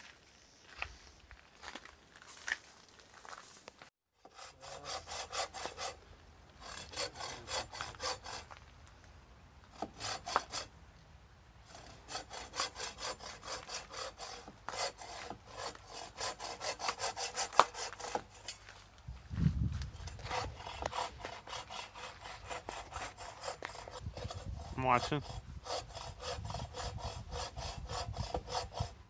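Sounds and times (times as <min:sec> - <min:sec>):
handsaw cutting wood: 0:04.2 - 0:06.0, 0:06.6 - 0:08.6, 0:09.7 - 0:10.7, 0:11.7 - 0:18.7, 0:19.9 - 0:29.0.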